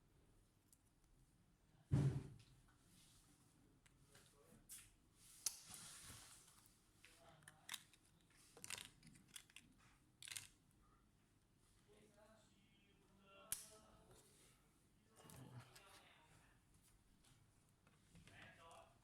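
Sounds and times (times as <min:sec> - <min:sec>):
laptop parts clicking and scraping: 0:07.4 - 0:10.6.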